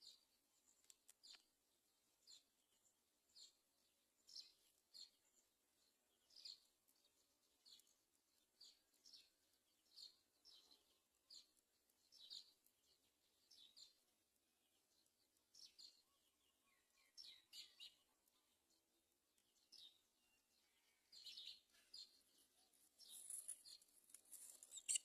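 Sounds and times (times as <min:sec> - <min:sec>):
high-pitched bird chirps: 0:24.7 - 0:25.0.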